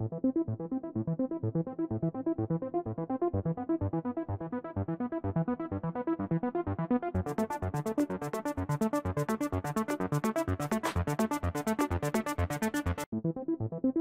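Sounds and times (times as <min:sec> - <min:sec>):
crisp hi-hat beat: 0:10.3 - 0:11.4.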